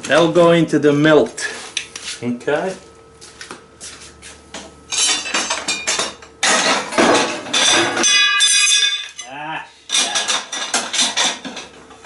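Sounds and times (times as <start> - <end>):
ringing metallic tone: 8.0 - 9.3.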